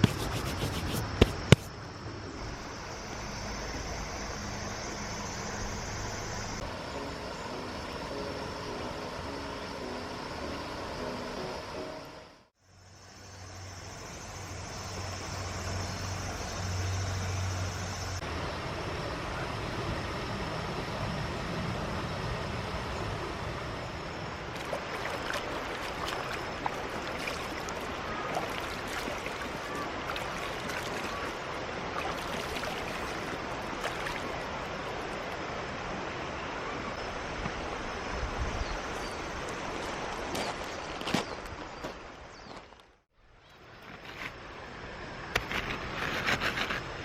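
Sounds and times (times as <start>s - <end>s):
mountain stream rushing: 2.4s - 12.4s, 18.2s - 42.7s.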